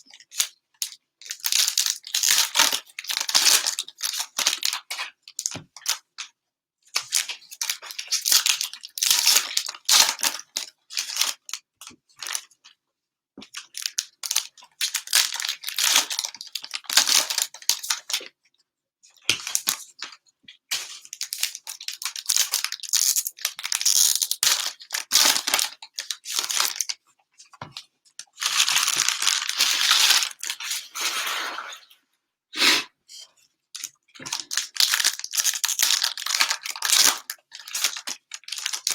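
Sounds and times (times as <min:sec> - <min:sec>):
cellophane wrappers crinkling: 0:01.2 - 0:06.0, 0:07.0 - 0:11.6, 0:12.2 - 0:12.5, 0:13.6 - 0:18.3, 0:20.8 - 0:27.0, 0:28.2 - 0:31.0, 0:33.8 - 0:38.9.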